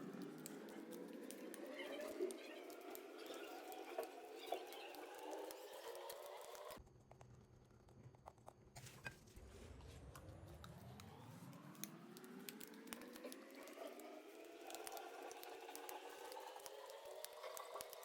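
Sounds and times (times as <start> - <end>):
slime squishing: 0.0 - 18.0
faint rising tone: 9.2 - 15.6.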